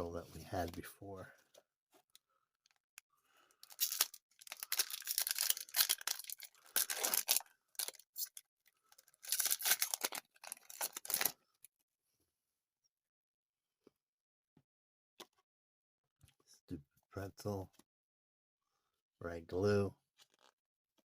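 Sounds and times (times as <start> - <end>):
wrapper tearing and crinkling: 3.6 - 11.4.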